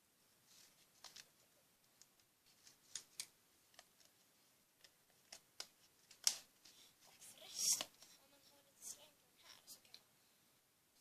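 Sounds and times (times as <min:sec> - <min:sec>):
faint sharp clicks and taps: 0:09.7 - 0:10.1.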